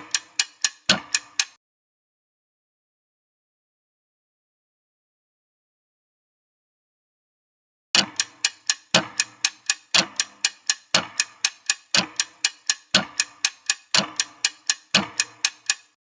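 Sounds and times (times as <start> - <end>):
timer ticking: 0.0 - 1.6, 8.0 - 16.0.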